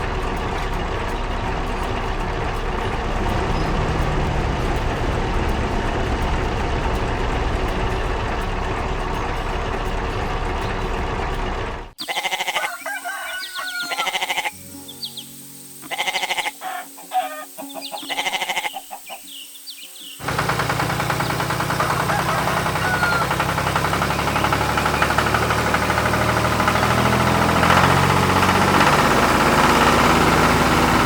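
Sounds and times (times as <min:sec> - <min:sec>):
low chugging engine: 0:00.0 - 0:12.3, 0:20.2 - 0:31.0
chickens clucking: 0:00.0 - 0:31.0.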